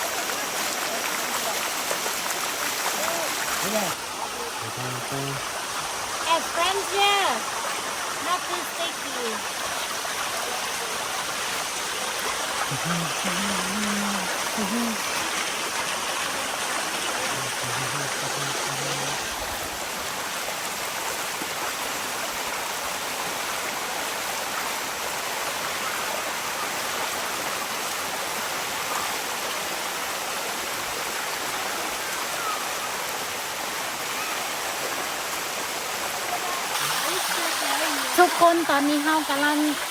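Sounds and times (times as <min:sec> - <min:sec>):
waterfall rushing over rocks: 0:00.0 - 0:39.9.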